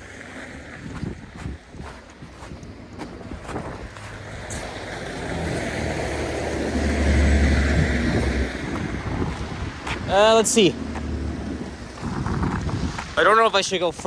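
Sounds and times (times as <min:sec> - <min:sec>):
vehicle driving past: 0:04.0 - 0:09.9.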